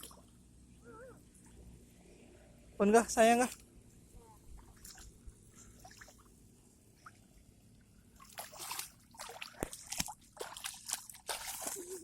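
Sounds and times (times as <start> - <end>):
water splashing and sloshing: 0.0 - 0.5, 4.3 - 12.0.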